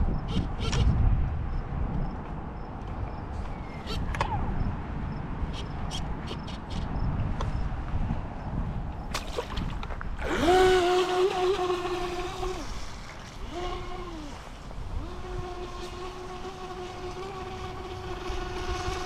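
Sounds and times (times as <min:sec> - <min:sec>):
motor whining: 0:10.2 - 0:19.0.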